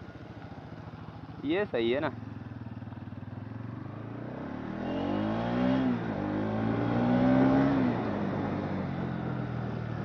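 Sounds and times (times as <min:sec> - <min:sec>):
motorcycle engine revving: 0:02.0 - 0:09.3.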